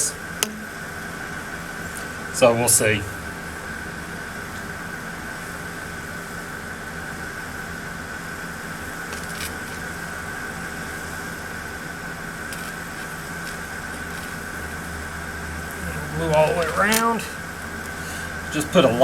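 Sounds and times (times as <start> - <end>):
high whine: 0.0 - 8.9
mechanical hum: 0.0 - 19.0.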